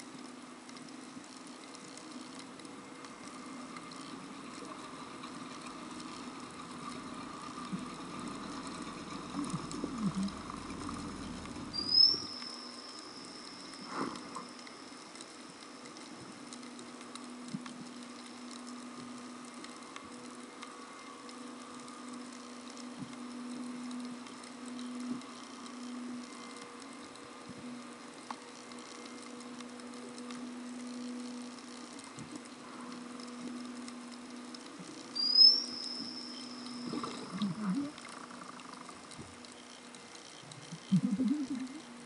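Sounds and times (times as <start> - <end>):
low underwater hums: 0.0 - 42.0
faint crackling: 0.1 - 42.0
high gliding whistle: 11.7 - 13.9, 35.2 - 37.2.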